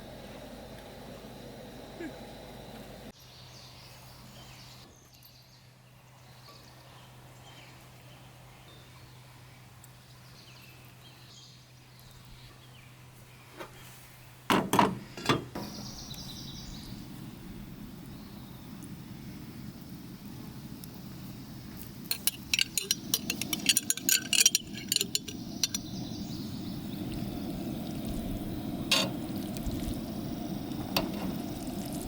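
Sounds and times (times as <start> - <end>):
rustling noise: 13.4 - 14.3.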